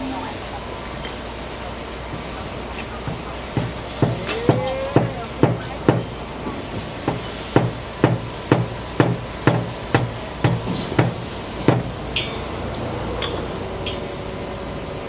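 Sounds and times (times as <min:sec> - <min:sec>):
hammer striking: 0:03.0 - 0:06.2, 0:07.0 - 0:12.5.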